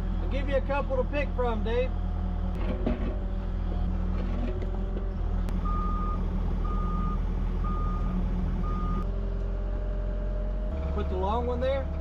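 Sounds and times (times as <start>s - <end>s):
diesel engine running: 0.0s - 12.0s
travel alarm beeps: 5.6s - 9.0s.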